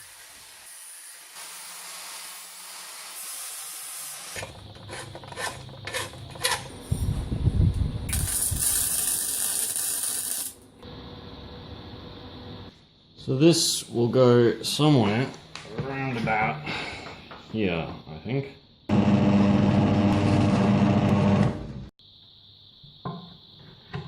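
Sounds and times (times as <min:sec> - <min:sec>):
loud hiss: 0:08.1 - 0:10.6.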